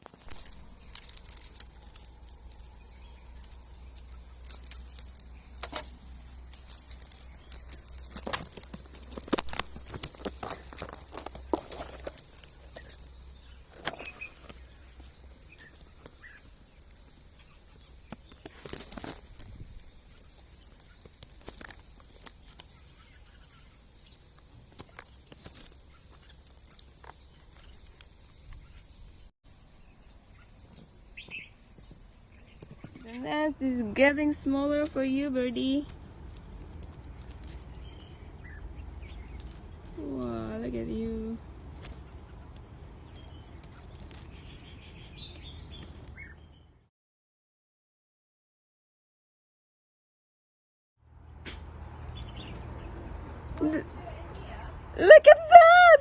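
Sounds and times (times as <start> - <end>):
small clicks and ticks: 0.0 - 13.1
rustling and crackling: 0.0 - 29.0, 30.6 - 46.3.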